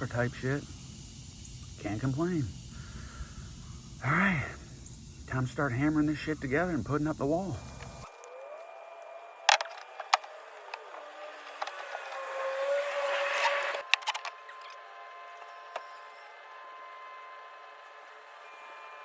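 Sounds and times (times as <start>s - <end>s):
faint steady hum: 0.0s - 19.0s
noisy work sound: 0.0s - 19.0s.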